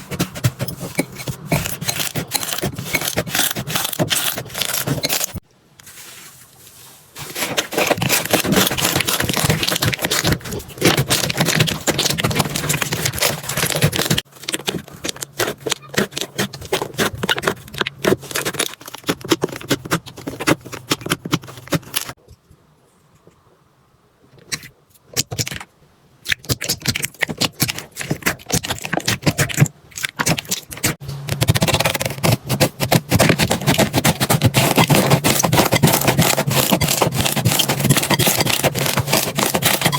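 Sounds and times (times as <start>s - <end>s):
slime squishing and crackling: 7.4s - 22.2s, 25.2s - 39.9s.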